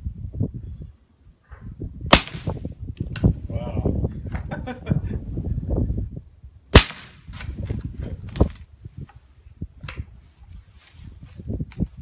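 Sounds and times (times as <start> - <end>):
rifle shot with echo: 2.1 - 2.6, 6.7 - 7.3.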